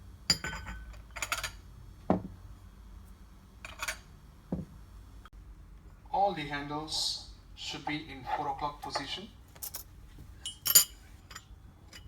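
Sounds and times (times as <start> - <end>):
cups and saucers clinking: 0.3 - 2.2.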